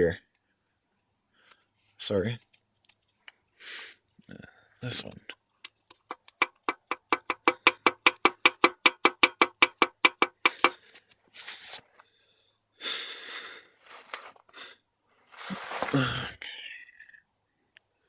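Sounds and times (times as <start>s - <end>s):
metal connecting rod clacking: 5.7s - 11.0s
rustling and scraping: 10.0s - 12.2s, 13.8s - 14.5s, 15.3s - 16.2s.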